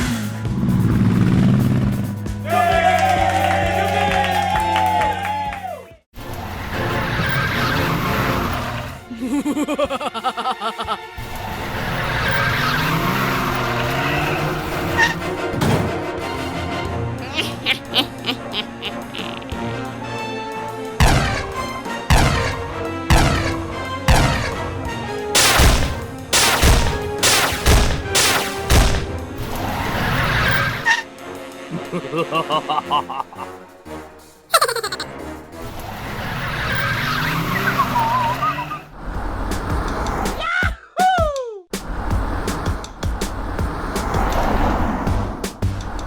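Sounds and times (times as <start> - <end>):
background music: 0.0 - 38.7, 41.8 - 46.0
tyres skidding: 6.2 - 9.1, 10.9 - 40.5, 41.8 - 46.0
sharp crashing hits: 21.0 - 29.7.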